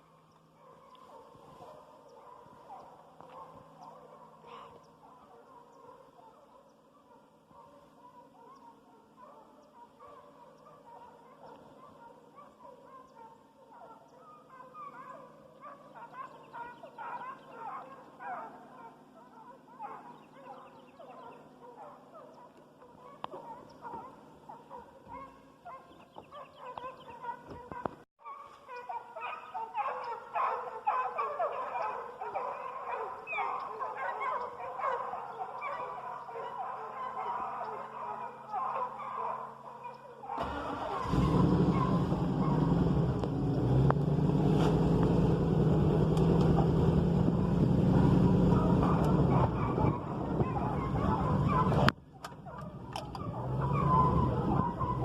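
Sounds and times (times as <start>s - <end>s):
faint low hum: 0.0s - 27.9s, 41.7s - 55.0s
hounds baying: 0.0s - 55.0s.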